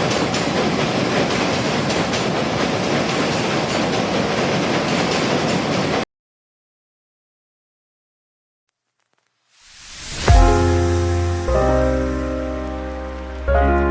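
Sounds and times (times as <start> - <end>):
train rumbling on rails: 0.0 - 6.0, 10.3 - 13.9
wheels clickety-clack over track: 0.0 - 6.1.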